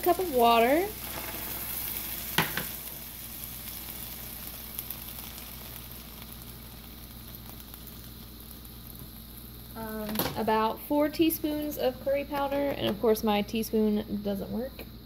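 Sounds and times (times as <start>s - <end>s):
onions sizzling in a pan: 0.0s - 15.0s.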